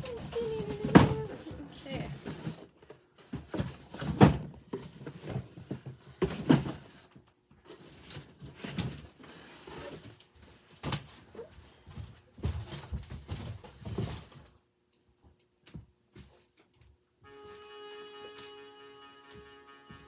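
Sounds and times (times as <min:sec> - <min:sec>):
boxes thumping down: 0:00.0 - 0:02.6, 0:03.3 - 0:07.0
cardboard boxes knocking and rustling: 0:00.0 - 0:07.1, 0:07.7 - 0:14.5.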